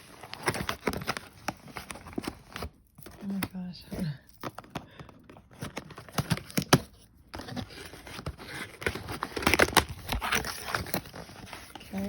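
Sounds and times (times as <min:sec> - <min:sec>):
rustling and crinkling: 0:00.0 - 0:12.0
packaging being torn open: 0:07.6 - 0:11.8.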